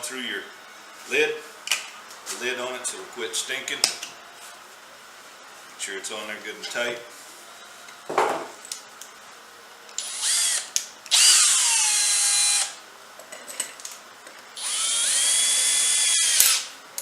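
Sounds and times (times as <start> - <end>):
power drill motor whining: 10.0 - 12.8, 14.6 - 16.7.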